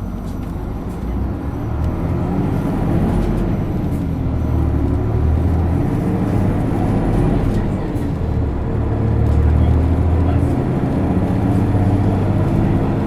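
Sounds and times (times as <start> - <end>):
diesel bus accelerating: 0.0 - 13.0.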